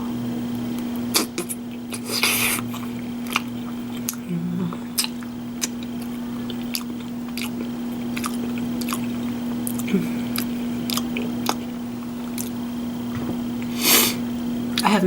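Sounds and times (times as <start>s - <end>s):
low hum: 0.0s - 15.0s
person chewing: 1.1s - 12.7s.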